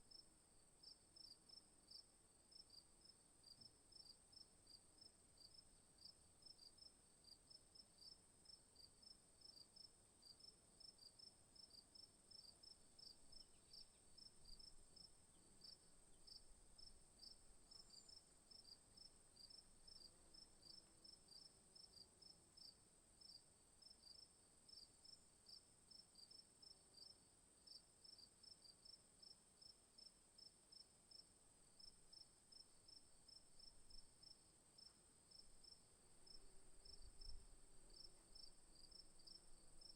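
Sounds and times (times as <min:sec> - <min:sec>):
crickets chirping: 0:09.4 - 0:26.4, 0:30.7 - 0:39.9.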